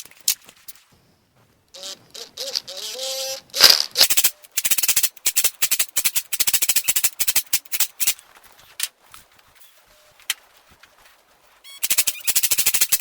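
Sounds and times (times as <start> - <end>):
metal tool clicking and scraping: 3.6 - 8.2, 11.8 - 13.0.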